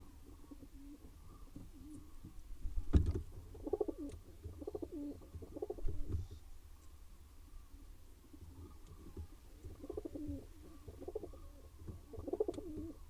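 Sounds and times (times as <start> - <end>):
pigeons cooing: 0.0 - 2.3, 3.5 - 6.4, 8.2 - 13.0.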